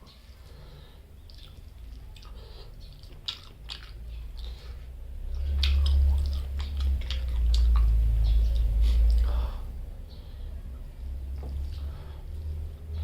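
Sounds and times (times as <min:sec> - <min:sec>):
person chewing: 0:01.2 - 0:09.7
loud low rumble: 0:04.0 - 0:13.0.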